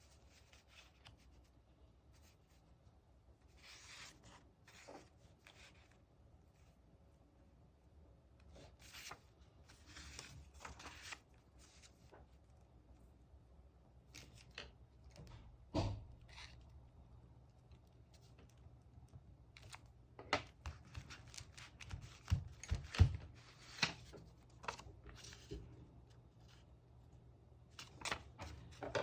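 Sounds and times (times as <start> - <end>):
paper rustling: 3.5 - 6.0, 8.5 - 12.5, 19.6 - 25.7, 27.7 - 29.0.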